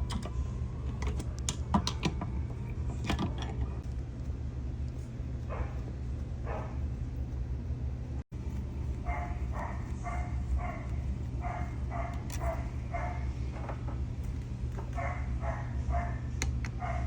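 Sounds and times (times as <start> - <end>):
steady low hum: 0.0 - 17.0
dog barking: 5.5 - 5.8, 6.4 - 6.8, 9.0 - 13.3, 15.0 - 17.0.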